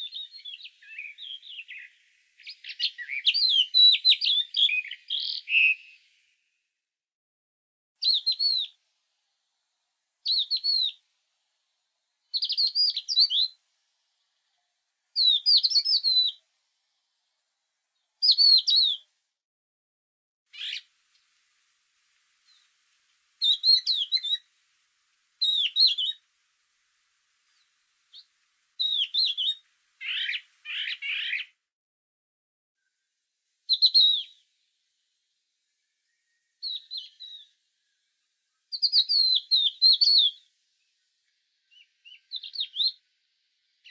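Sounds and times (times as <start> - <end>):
songbird chirping: 0.0 - 6.4, 8.0 - 8.8, 9.5 - 16.5, 17.3 - 19.1, 20.5 - 21.4, 22.4 - 24.6, 25.4 - 26.3, 27.4 - 31.6, 33.7 - 34.6, 35.6 - 43.9
rough lower bird calls: 20.5 - 20.9, 28.1 - 31.5.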